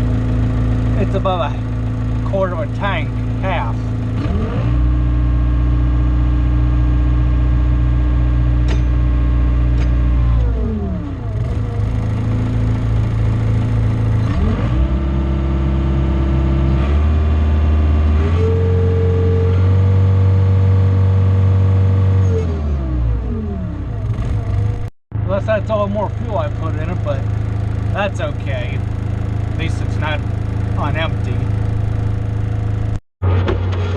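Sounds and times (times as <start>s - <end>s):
diesel engine revving: 0.0s - 33.9s.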